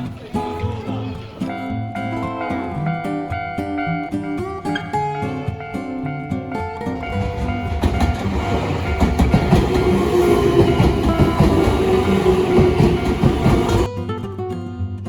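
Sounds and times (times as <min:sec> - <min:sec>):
train wheels clattering over track: 0:06.9 - 0:13.9.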